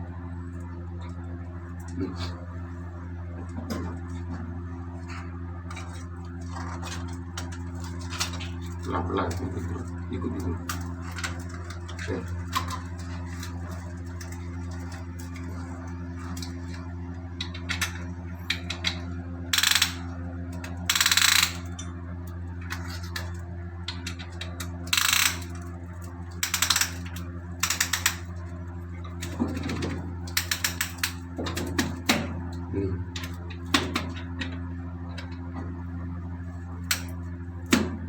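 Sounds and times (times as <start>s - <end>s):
low machinery hum: 0.0s - 38.0s
ratcheting tool clicking: 19.6s - 20.0s, 20.9s - 21.6s, 24.9s - 25.4s, 26.4s - 27.0s, 27.6s - 28.2s.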